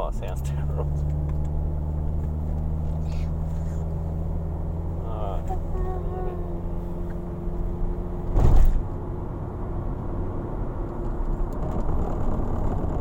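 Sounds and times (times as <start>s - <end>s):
minivan cabin rumble: 0.0s - 13.0s
loud thump: 8.3s - 8.9s.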